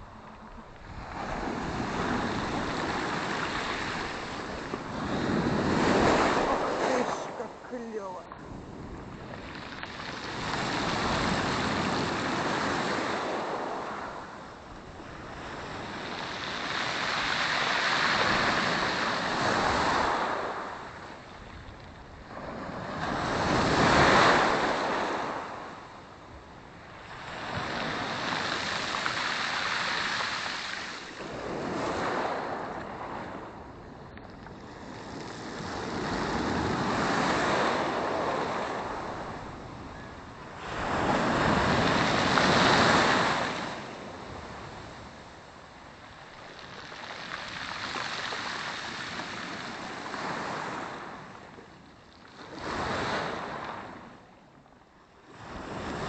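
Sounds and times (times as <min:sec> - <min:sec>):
waves washing up pebble beach: 0:00.9 - 0:14.3, 0:15.0 - 0:21.1, 0:27.2 - 0:32.7, 0:46.3 - 0:51.0.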